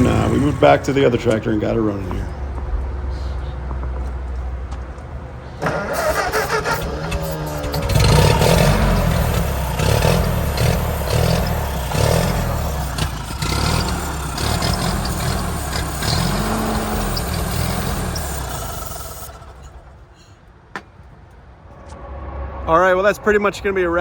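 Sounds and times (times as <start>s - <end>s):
tractor engine running: 0.0s - 20.2s.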